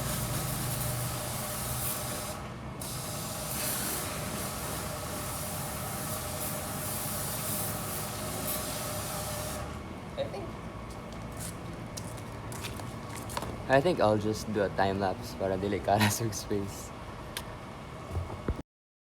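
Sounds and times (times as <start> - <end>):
water spraying from a hose: 0.0 - 9.7.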